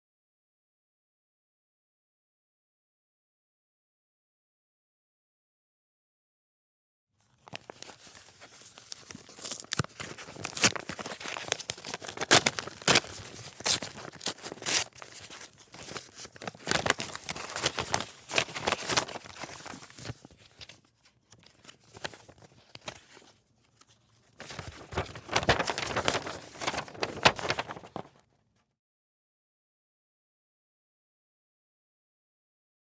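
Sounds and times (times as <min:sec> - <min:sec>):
paper rustling: 0:07.3 - 0:28.2
sharp paper crack: 0:07.4 - 0:28.2
paper tearing and crinkling: 0:07.5 - 0:20.7, 0:24.4 - 0:28.2.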